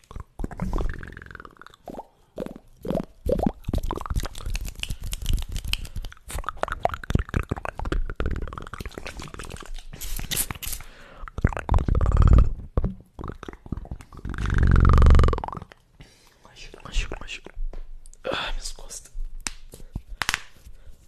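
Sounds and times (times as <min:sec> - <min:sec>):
wet mouth clicks and smacks: 0:00.0 - 0:15.9
low throaty voiced sounds: 0:06.1 - 0:09.4, 0:11.2 - 0:15.8.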